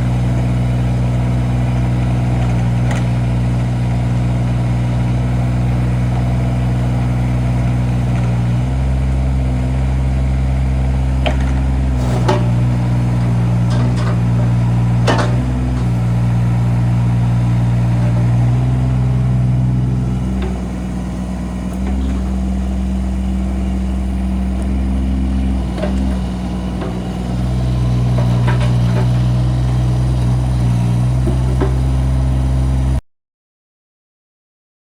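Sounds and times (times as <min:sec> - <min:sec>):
excavator diesel engine running: 0:00.0 - 0:33.0.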